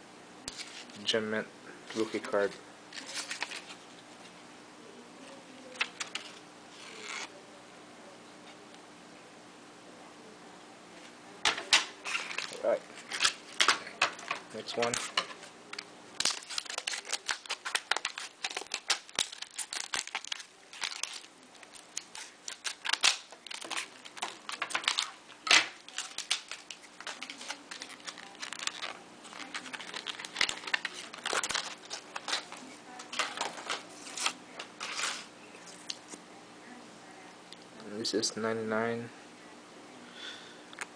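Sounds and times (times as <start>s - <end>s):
packaging crinkling: 3.0s - 3.9s, 5.6s - 7.3s, 11.5s - 36.0s
packaging tearing: 11.7s - 35.3s.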